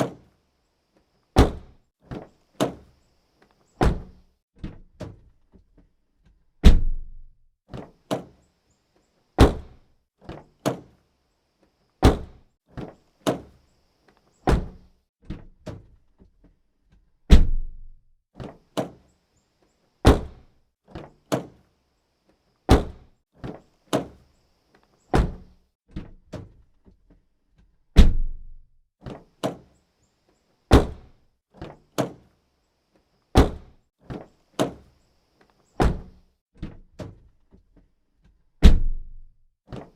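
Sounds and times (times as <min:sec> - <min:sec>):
car door shutting: 0:01.4 - 0:01.7, 0:22.7 - 0:23.0, 0:35.8 - 0:36.2.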